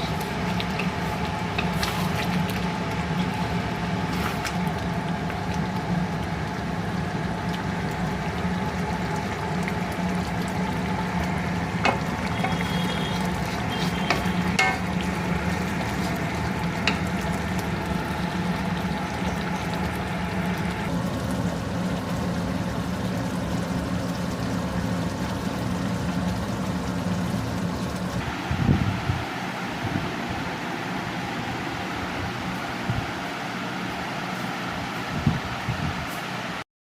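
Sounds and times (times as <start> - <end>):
gravy sizzling in a pan: 0.0 - 28.2.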